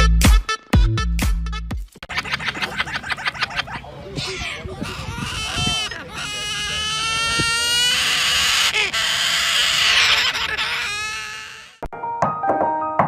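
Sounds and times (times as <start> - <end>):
long loud animal cry: 4.2 - 11.8.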